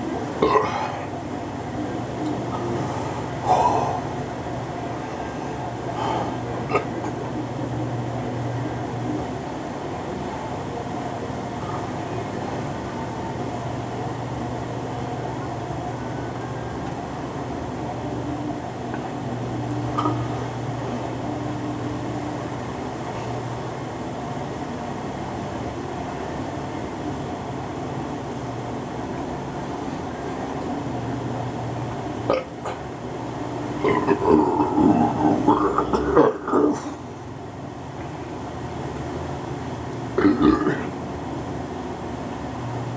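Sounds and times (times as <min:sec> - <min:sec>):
low machine hum: 0:00.0 - 0:42.9.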